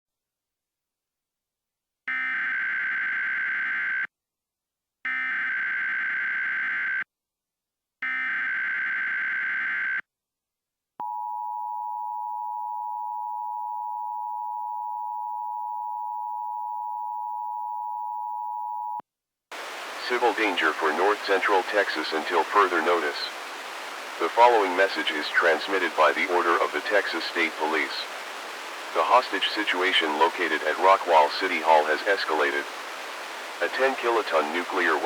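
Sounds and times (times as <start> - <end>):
data header bursts: 19.6 - 35.0.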